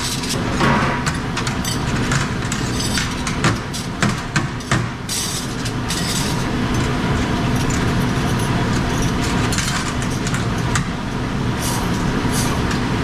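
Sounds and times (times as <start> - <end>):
steady machine hum: 0.0 - 13.0.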